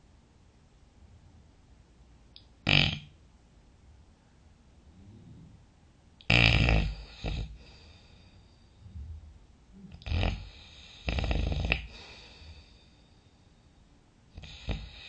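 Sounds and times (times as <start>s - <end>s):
snort: 2.7s - 3.1s, 6.3s - 8.2s, 9.8s - 12.8s, 14.4s - 15.0s
person snoring: 6.3s - 8.4s, 9.8s - 12.9s, 14.4s - 15.0s.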